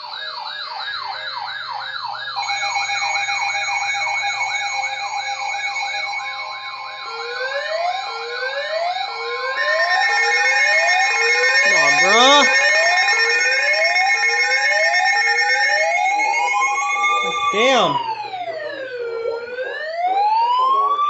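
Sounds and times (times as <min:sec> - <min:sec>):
fast yelp siren: 0:07.0 - 0:21.0
steady high alert tones: 0:09.6 - 0:18.4
rising siren wails: 0:14.4 - 0:21.0.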